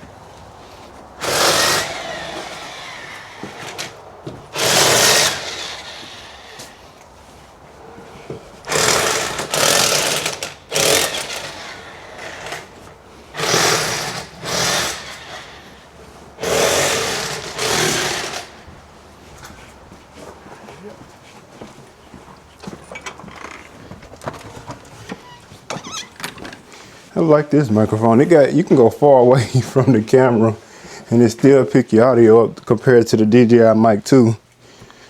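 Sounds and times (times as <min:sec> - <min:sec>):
rotary tool grinding: 0:01.2 - 0:06.8, 0:08.7 - 0:15.8, 0:16.4 - 0:18.7.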